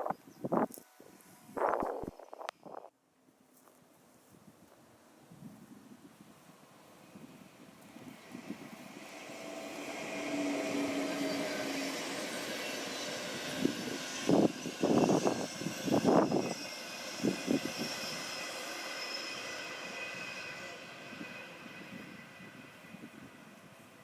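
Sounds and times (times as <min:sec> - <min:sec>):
train rolling past: 0:06.6 - 0:24.0.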